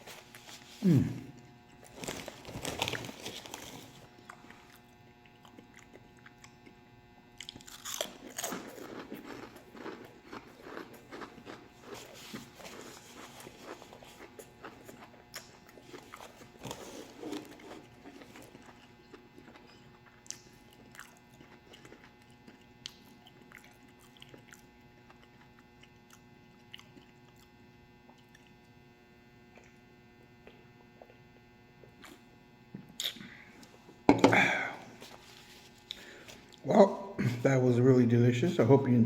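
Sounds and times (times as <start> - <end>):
steady electrical hum: 0.0 - 39.0
chewing and biting food: 1.7 - 28.6.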